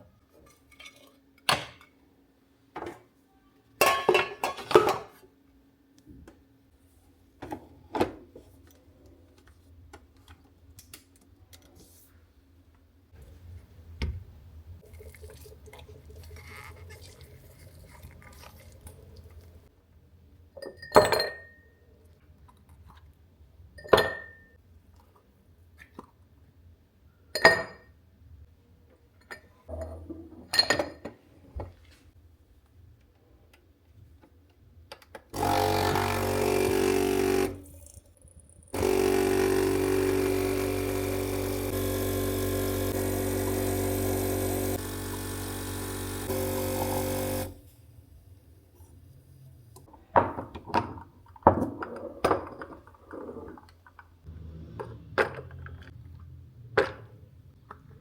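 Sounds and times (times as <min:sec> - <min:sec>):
dishes clinking: 0:03.8 - 0:05.2
electric appliance motor humming: 0:35.4 - 0:37.6, 0:38.8 - 0:47.6.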